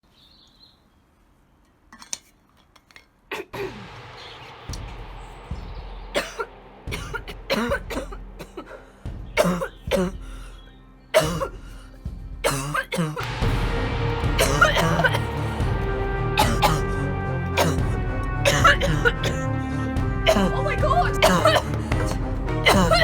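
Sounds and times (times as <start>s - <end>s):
woman coughing: 3.3s - 3.9s, 6.2s - 8.8s, 9.4s - 10.3s, 11.1s - 11.7s, 12.4s - 13.3s, 14.4s - 15.3s, 16.4s - 17.0s, 17.6s - 23.0s
background music: 3.6s - 23.0s.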